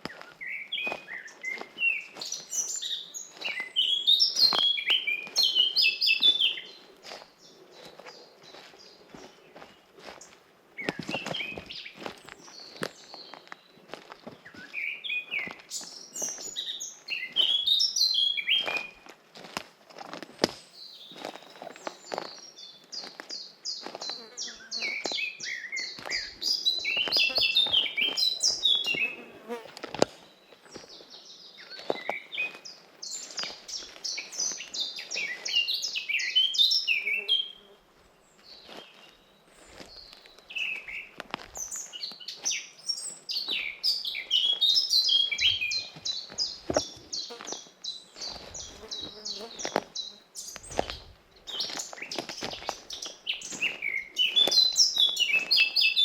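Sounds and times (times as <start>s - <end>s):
songbirds chirping: 0.0s - 56.0s.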